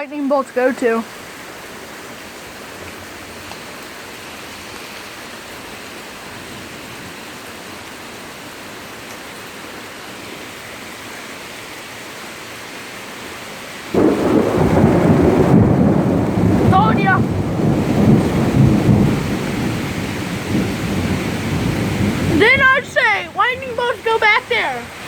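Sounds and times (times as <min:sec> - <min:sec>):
rain hissing: 0:00.1 - 0:25.0
loud rumbling thunderclap: 0:13.9 - 0:23.8.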